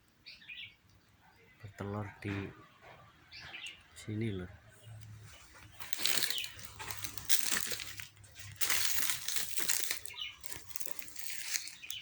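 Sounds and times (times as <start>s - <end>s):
leaves and twigs rustling: 5.0s - 12.0s.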